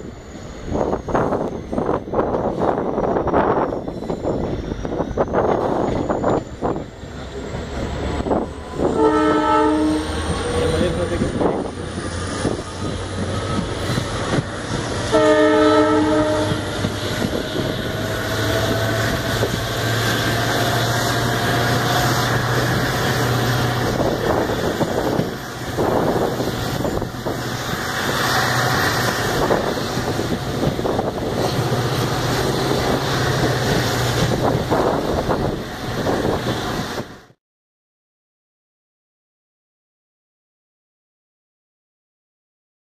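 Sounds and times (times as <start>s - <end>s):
diesel locomotive engine droning: 0.0s - 37.4s
locomotive horn blasts: 8.8s - 10.3s, 15.0s - 16.9s.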